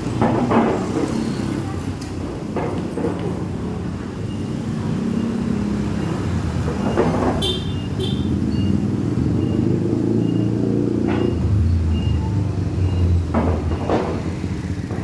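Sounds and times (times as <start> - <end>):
traffic rumble: 0.0 - 15.0.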